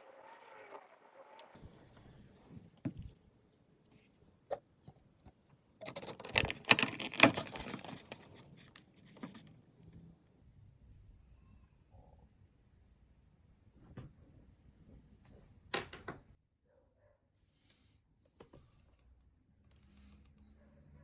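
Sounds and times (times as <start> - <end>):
rustling and scraping: 5.8 - 9.6.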